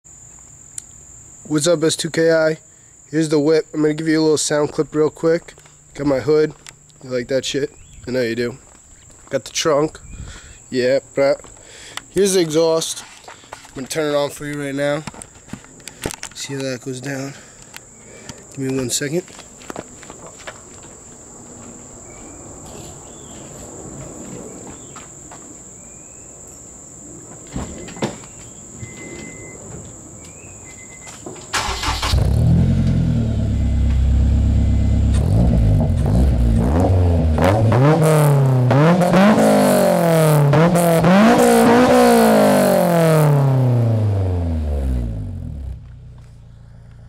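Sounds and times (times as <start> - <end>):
car engine starting and revving: 31.6 - 47.0.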